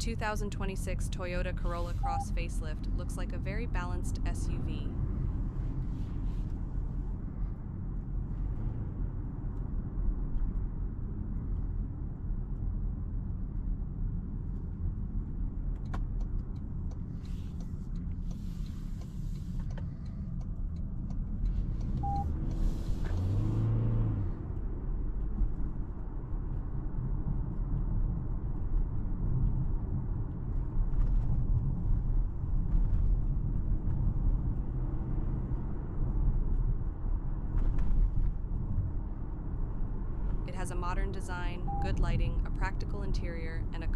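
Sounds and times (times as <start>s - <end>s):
car engine and road noise: 0.0s - 43.9s.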